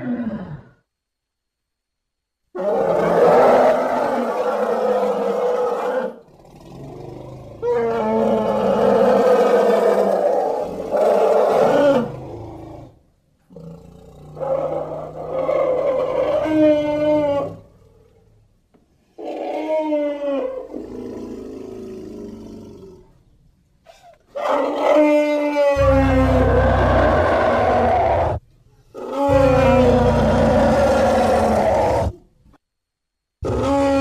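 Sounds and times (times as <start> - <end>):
elephant-like creature calls: 13.6 - 18.0, 23.9 - 32.2, 33.4 - 34.0.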